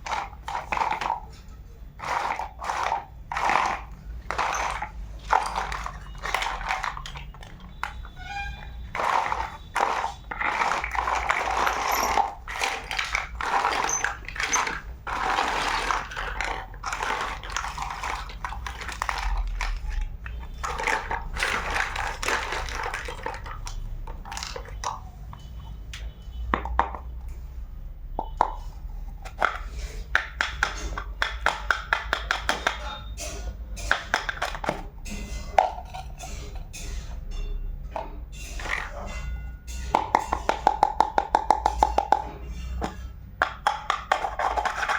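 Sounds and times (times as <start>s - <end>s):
plastic toy pieces clicking: 0.0s - 1.3s, 2.0s - 25.5s, 29.2s - 33.0s, 33.8s - 34.9s, 43.4s - 44.9s
plastic packaging rustling: 0.0s - 24.8s.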